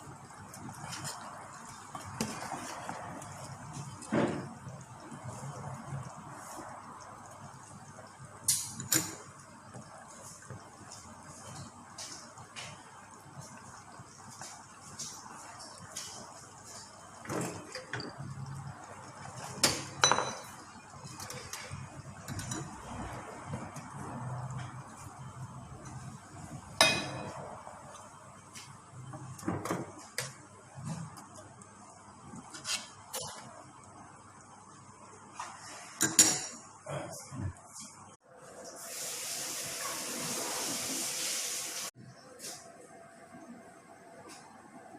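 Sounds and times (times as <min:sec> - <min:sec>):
steady cooking hiss: 0:00.0 - 0:36.6, 0:37.2 - 0:42.7
kitchenware clinking: 0:19.4 - 0:20.6, 0:26.8 - 0:27.4.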